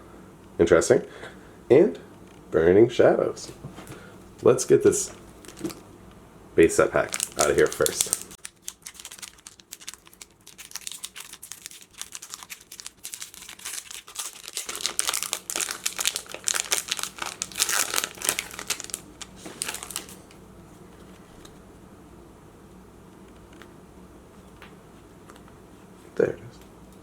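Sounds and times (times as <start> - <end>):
foil wrapper crinkling and tearing: 6.9 - 20.3.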